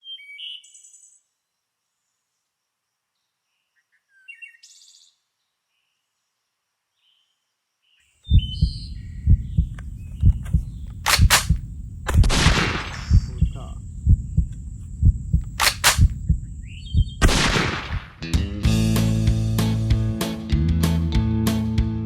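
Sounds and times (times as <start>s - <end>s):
songbird chirps: 0.0s - 11.4s, 13.4s - 17.2s
low pulsing rumble: 8.3s - 17.4s.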